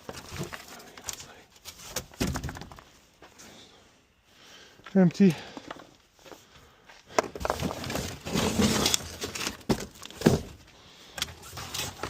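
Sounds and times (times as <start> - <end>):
rustling and scraping junk: 0.0 - 3.6, 7.1 - 12.0
objects knocking and clattering: 2.1 - 2.9.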